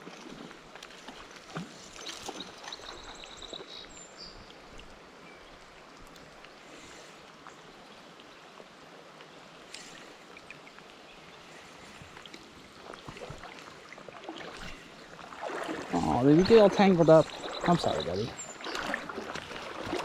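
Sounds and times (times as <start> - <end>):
small splashes and knocks: 0.0 - 3.7, 11.8 - 20.0
flowing creek water: 0.0 - 20.0.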